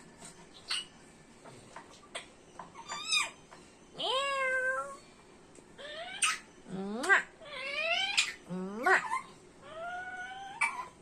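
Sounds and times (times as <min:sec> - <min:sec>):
parrot meow-like calls: 0:04.0 - 0:05.0, 0:05.8 - 0:11.0.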